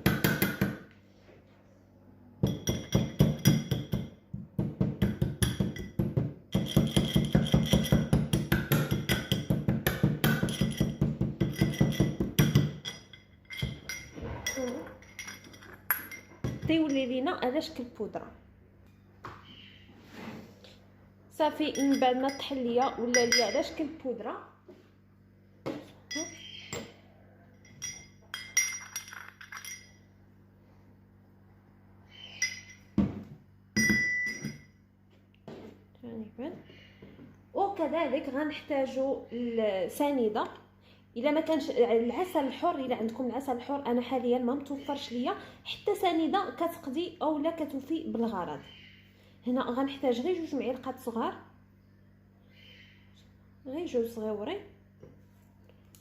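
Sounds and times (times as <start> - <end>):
pestle pounding in a mortar: 0.0 - 0.8, 2.4 - 12.8
utensils clinking on a dish: 10.4 - 17.1, 21.6 - 23.8, 27.6 - 30.1, 32.2 - 33.0.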